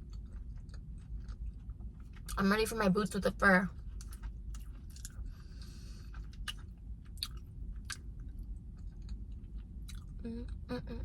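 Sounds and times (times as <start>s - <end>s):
person chewing food: 0.0s - 2.4s, 3.8s - 10.6s
low steady hum: 0.0s - 11.0s
mouth clicks and crunches: 3.9s - 8.0s.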